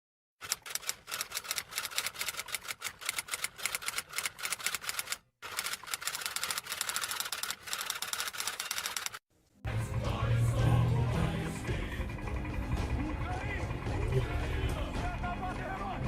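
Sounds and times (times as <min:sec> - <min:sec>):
rapid typing clicks: 0:00.4 - 0:09.2.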